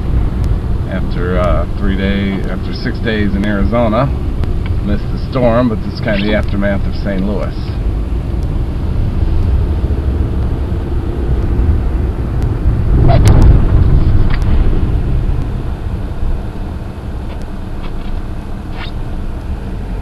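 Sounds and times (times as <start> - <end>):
car driving rumble: 0.0 - 20.0.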